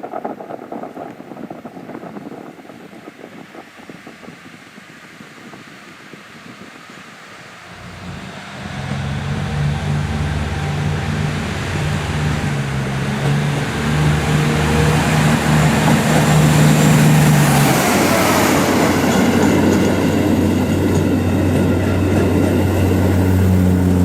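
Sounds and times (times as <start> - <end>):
diesel railcar engine drone: 5.0 - 24.0.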